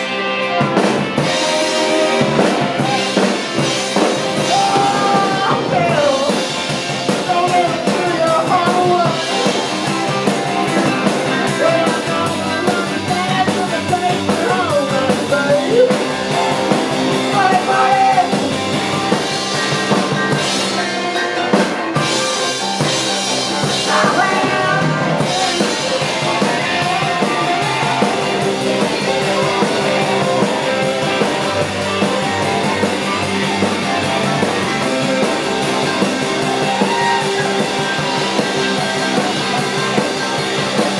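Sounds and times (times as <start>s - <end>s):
drum kit: 0.0s - 40.9s
guitar: 0.0s - 40.9s
rock band playing: 0.0s - 40.9s
person singing: 1.2s - 18.6s, 23.6s - 32.8s.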